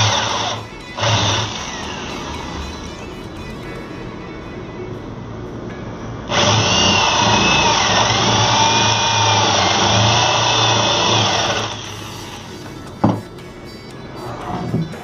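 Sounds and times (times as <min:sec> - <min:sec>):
power tool motor whine: 0:00.0 - 0:03.1, 0:06.3 - 0:13.2.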